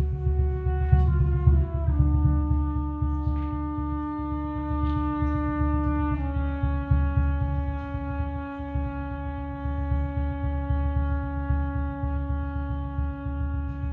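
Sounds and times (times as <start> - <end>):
low uneven rumble: 0.0 - 13.9.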